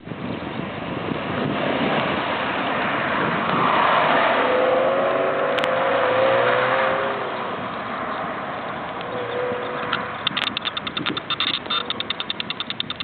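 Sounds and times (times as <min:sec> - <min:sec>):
tyre and wind noise: 0:00.0 - 0:13.0
car engine accelerating hard: 0:00.4 - 0:12.0
sharp click: 0:08.9 - 0:13.0.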